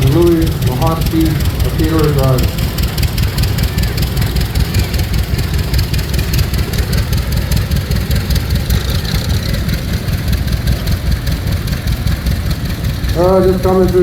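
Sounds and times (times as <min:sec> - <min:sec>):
tractor engine rumbling: 0:00.0 - 0:14.0.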